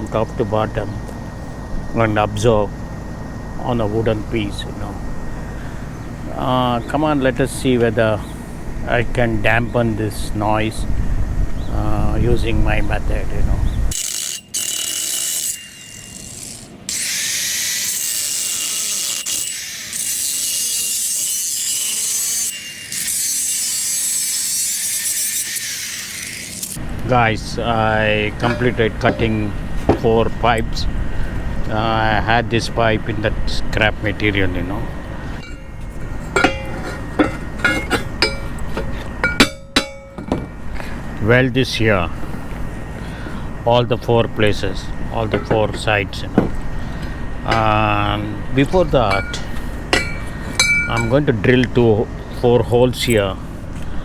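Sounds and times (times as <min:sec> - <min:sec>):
power tool cutting steel pipe: 0:13.9 - 0:26.8, 0:28.1 - 0:30.1, 0:35.4 - 0:40.3, 0:46.9 - 0:51.2
steel pipe pieces clinking: 0:28.4 - 0:30.0, 0:35.4 - 0:40.6, 0:45.2 - 0:51.3.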